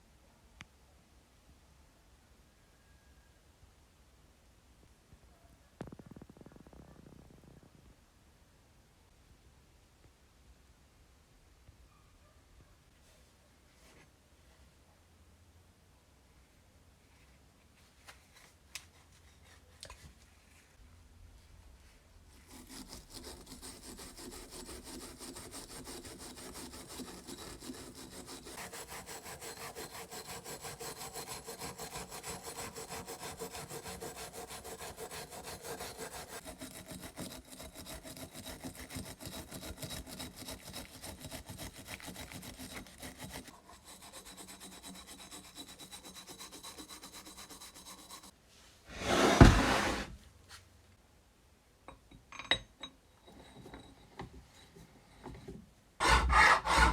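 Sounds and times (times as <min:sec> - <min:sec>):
saw cutting through wood: 0:22.5 - 0:48.3, 0:56.0 - 0:56.9.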